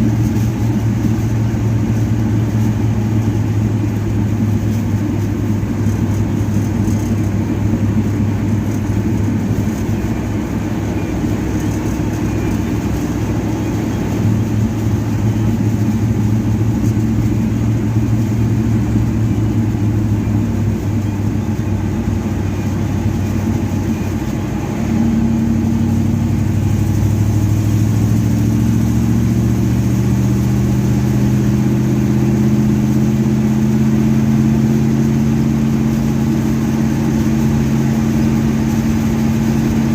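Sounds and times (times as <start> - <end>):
car engine idling: 0.0 - 39.9.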